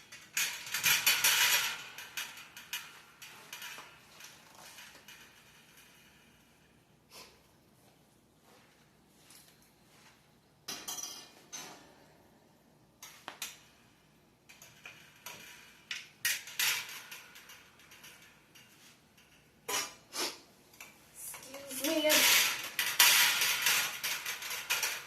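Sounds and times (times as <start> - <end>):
metal shelf racks clinking: 21.2 - 25.0.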